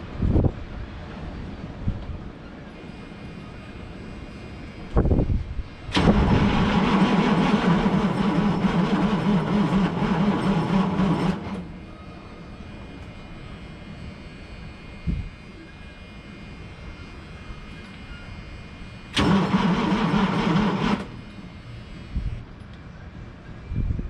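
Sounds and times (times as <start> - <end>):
diesel engine cranking: 5.9 - 11.8, 19.1 - 21.4.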